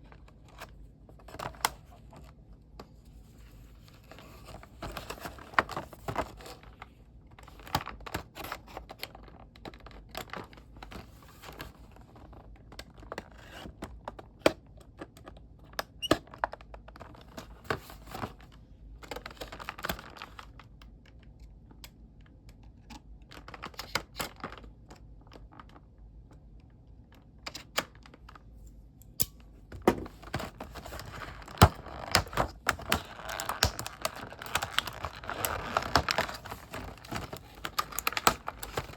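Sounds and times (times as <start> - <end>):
packaging rustling and crinkling: 29.7 - 38.9
clicks and taps on packaging: 29.8 - 38.9.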